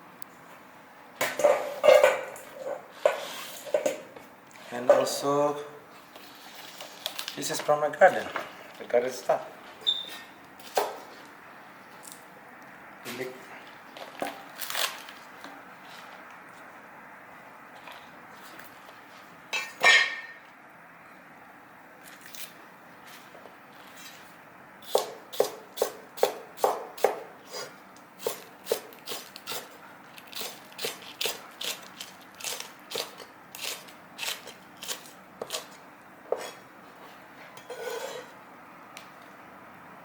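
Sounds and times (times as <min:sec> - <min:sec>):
knife chopping vegetables: 0:24.8 - 0:27.3, 0:28.2 - 0:36.6.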